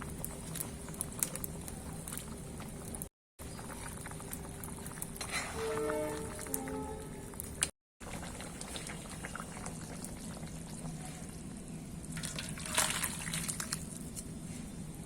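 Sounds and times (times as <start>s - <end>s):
small pops and crackles: 0.0s - 5.2s
curry bubbling in a pan: 0.0s - 14.6s.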